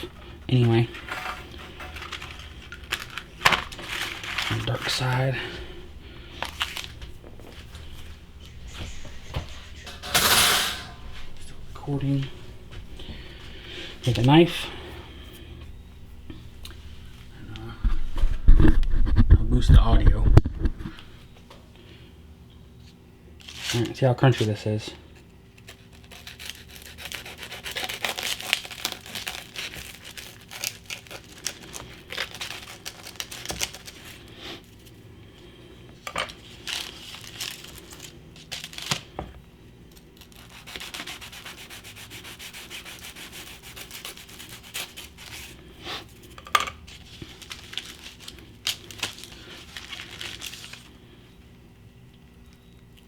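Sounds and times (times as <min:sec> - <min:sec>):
knife sawing through crunchy sandwich: 0:25.6 - 0:34.8, 0:40.2 - 0:46.2.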